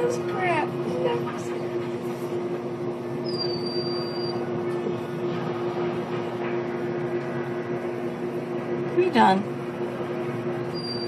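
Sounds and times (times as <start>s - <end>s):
steady mechanical hum: 0.0s - 11.0s
faint high whine: 3.2s - 11.0s.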